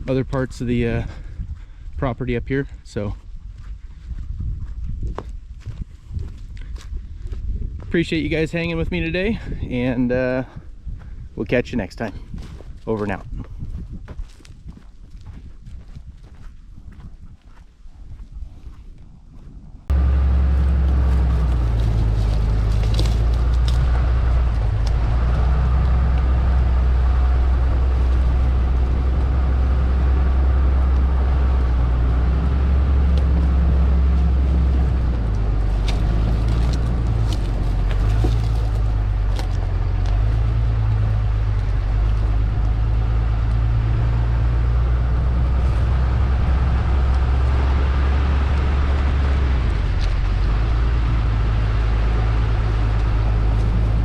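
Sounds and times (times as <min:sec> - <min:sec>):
heavy diesel engine running: 0:19.9 - 0:54.0.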